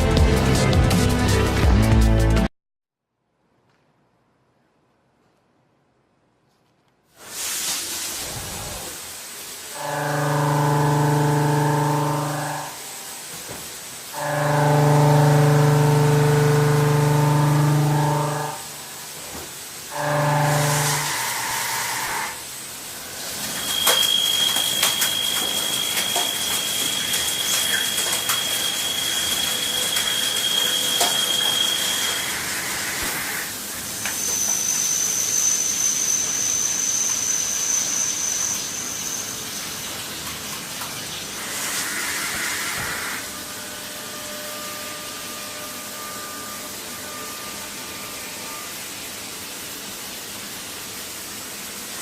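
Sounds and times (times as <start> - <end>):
cnc machine whining: 9.8 - 12.8, 14.2 - 18.8, 19.9 - 22.4, 23.6 - 33.5, 42.1 - 48.8.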